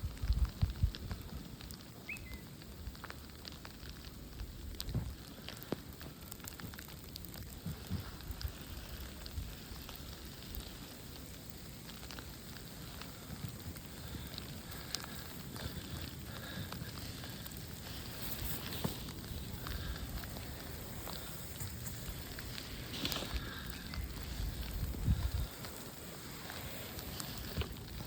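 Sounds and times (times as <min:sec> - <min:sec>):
wind buffeting microphone: 0:00.0 - 0:01.4, 0:16.9 - 0:28.0
steady hiss of snow storm: 0:00.0 - 0:28.0.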